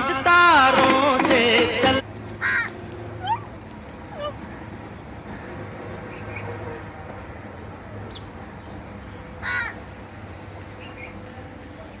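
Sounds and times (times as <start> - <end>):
crow cawing: 2.4 - 2.7, 9.4 - 9.8.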